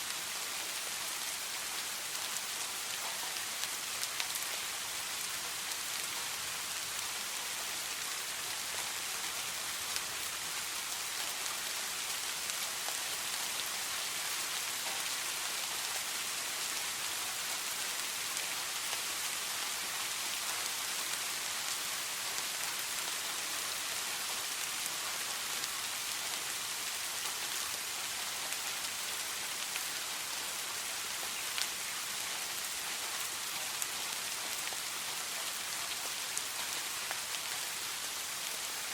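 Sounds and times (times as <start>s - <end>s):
gentle rain hissing: 0.0s - 38.9s
faint raindrop ticks: 2.1s - 7.2s, 11.1s - 19.6s, 24.2s - 38.7s.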